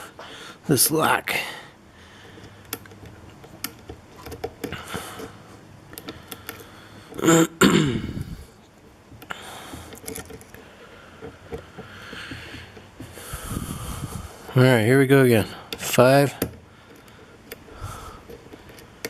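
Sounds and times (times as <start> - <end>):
person clearing throat: 7.2 - 8.2
lock picks clicking in lock: 9.9 - 10.6.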